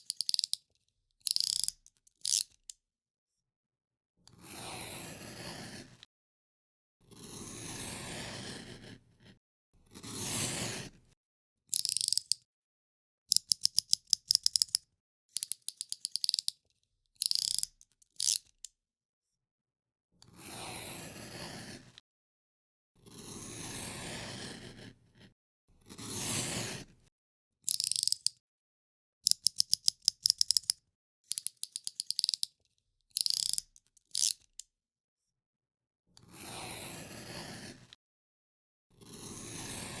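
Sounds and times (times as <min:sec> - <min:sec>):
utility knife slider clicking: 0:00.0 - 0:00.6, 0:01.2 - 0:02.8, 0:11.7 - 0:12.4, 0:13.3 - 0:14.8, 0:15.4 - 0:16.6, 0:17.2 - 0:18.7, 0:27.7 - 0:28.4, 0:29.3 - 0:32.5, 0:33.2 - 0:34.6.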